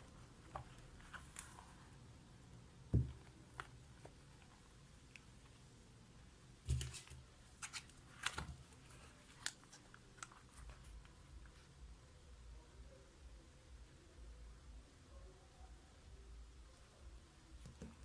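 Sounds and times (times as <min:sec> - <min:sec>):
soft thump: 0:02.9 - 0:03.2.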